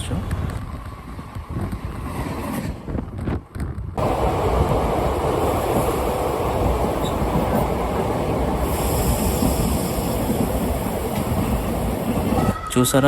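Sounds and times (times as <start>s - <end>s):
train wheels rumbling on rails: 0.0s - 12.6s
higher hiss: 7.1s - 11.2s.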